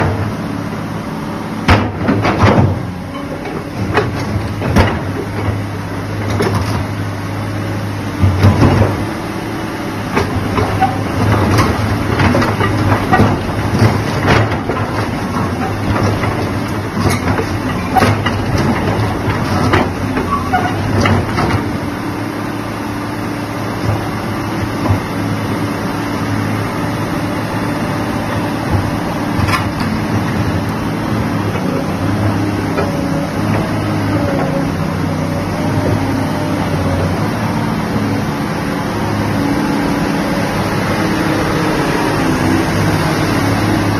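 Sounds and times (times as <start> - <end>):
excavator diesel engine running: 0.0 - 43.9
sharp metallic clanks and knocks: 1.7 - 6.8.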